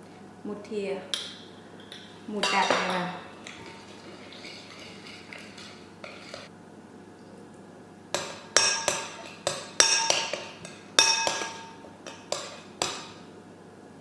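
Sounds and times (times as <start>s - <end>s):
metal spoon clinking against bowl: 8.2s - 13.1s.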